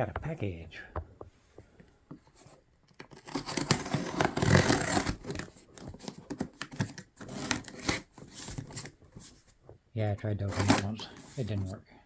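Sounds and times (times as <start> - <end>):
package tearing open: 3.0 - 5.5.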